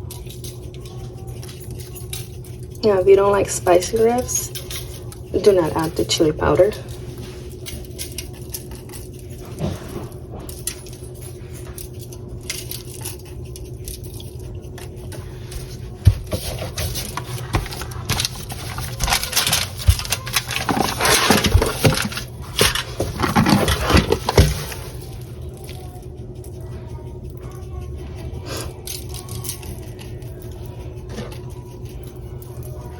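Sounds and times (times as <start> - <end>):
steady low hum: 0.0 - 32.9
spice container rattling: 16.3 - 25.0.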